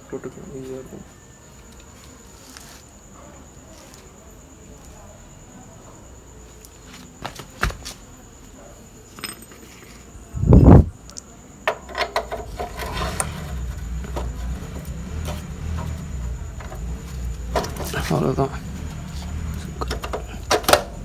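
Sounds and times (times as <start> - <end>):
metal tools clinking: 9.1 - 10.1, 11.7 - 21.0
low steady rumble: 10.3 - 11.0, 12.2 - 21.0.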